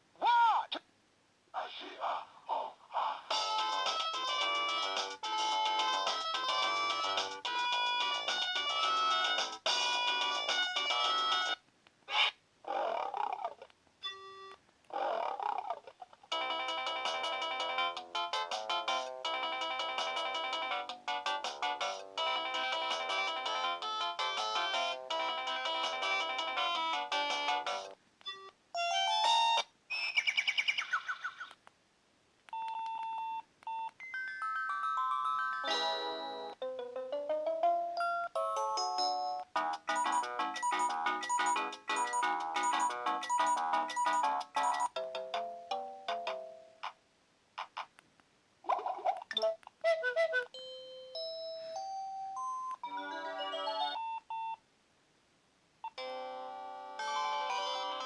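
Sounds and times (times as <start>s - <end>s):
phone ringtone melody: 32.6s - 46.4s, 50.6s - 54.6s, 55.9s - 58.0s
mobile phone ringtones: 39.7s - 45.1s, 50.6s - 54.6s.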